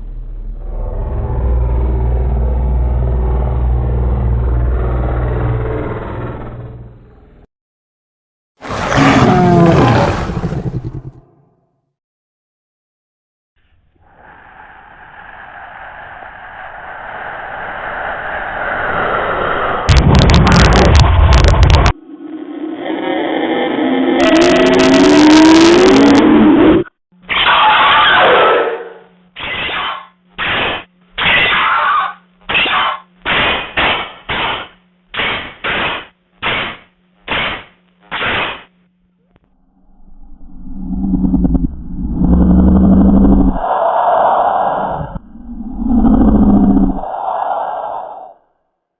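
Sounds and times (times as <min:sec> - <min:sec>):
low hum: 0:00.0 - 0:07.5, 0:13.6 - 0:27.3, 0:28.9 - 0:29.4, 0:32.2 - 0:47.4
steady rushing noise: 0:14.1 - 0:22.0
short noisy sound effect bursts: 0:29.3 - 0:38.9.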